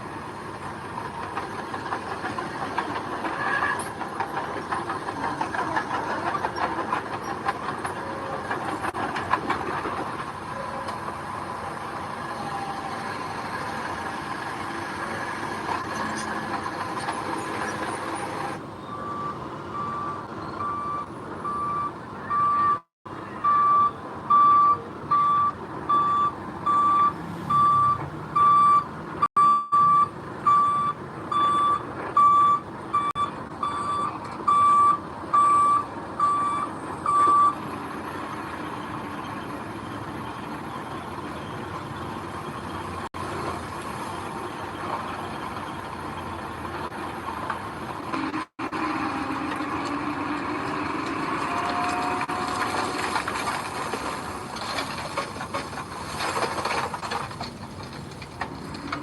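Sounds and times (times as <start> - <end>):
diesel engine running: 0.0 - 59.0
backup alarm beeping: 23.4 - 37.6.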